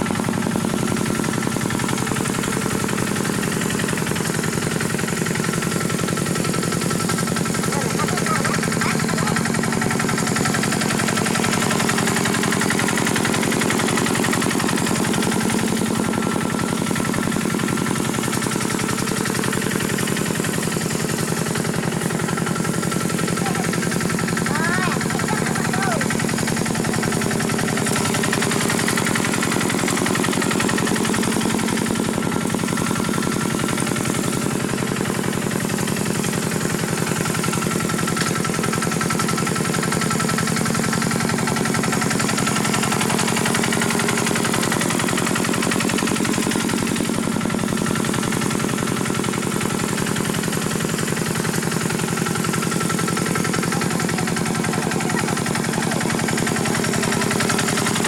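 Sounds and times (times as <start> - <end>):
diesel engine chugging: 0.0 - 58.0.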